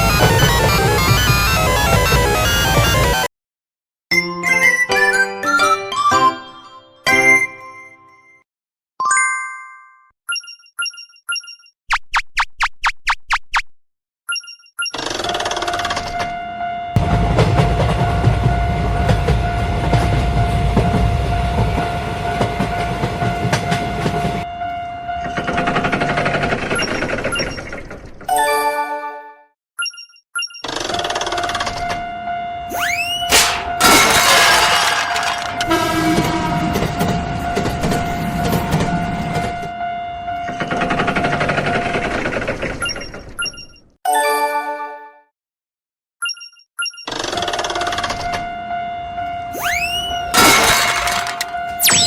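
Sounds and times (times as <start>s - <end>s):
wheels clickety-clack: 17.0s - 24.4s, 25.2s - 28.2s, 34.8s - 39.7s, 40.5s - 43.3s
train rumbling: 17.0s - 28.1s, 33.4s - 39.8s
fast clattering rattle: 33.5s - 35.7s, 50.4s - 51.5s
steady high tone: 49.5s - 52.0s.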